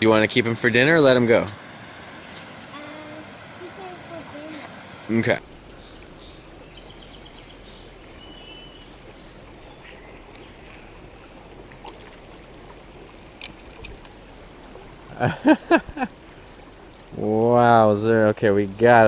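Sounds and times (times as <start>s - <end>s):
creek water flowing: 5.1s - 19.0s.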